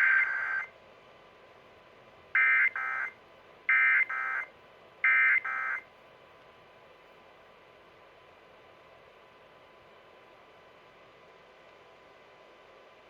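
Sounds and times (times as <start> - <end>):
faint radio hiss: 0.0 - 6.4.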